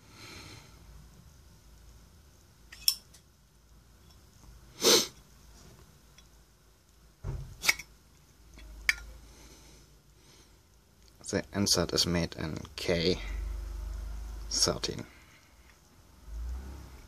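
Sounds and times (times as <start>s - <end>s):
dull thump: 7.2s - 7.6s.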